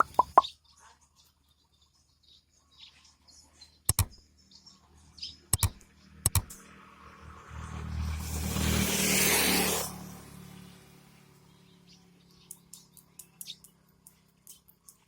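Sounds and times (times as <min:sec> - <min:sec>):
sharp clicks: 0:00.0 - 0:00.5, 0:03.9 - 0:04.2, 0:05.5 - 0:06.6
birds chirping: 0:00.0 - 0:00.8, 0:11.5 - 0:13.8.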